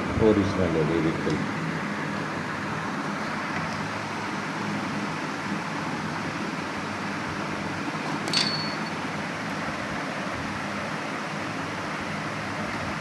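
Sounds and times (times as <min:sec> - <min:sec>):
steady background hum: 0:00.0 - 0:13.0
sharp ringing click: 0:08.2 - 0:09.0.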